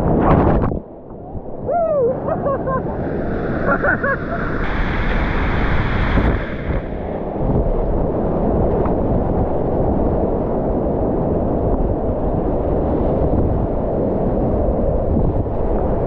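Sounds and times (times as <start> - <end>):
whitewater rapids rushing: 2.0 - 7.6.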